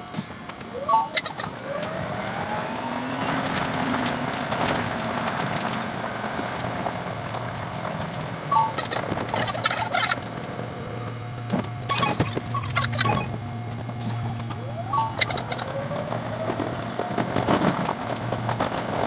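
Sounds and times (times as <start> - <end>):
sped-up train wheel chatter: 0.0 - 2.5, 6.5 - 19.0
rising whine: 8.1 - 18.2.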